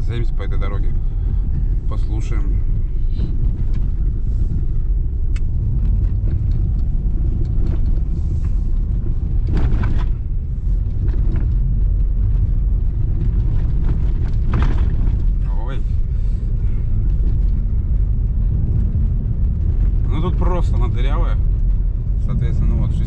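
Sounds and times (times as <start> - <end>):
car knocks and rattles: 0.0 - 23.0
tyres rumbling on rough road: 0.0 - 23.0.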